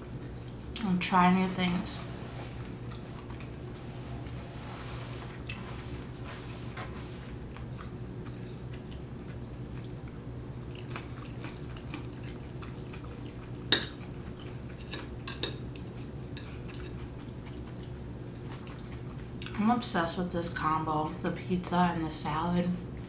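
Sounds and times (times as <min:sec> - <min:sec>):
steady low hum: 0:00.0 - 0:23.0
chewing: 0:07.5 - 0:15.2, 0:15.8 - 0:19.6.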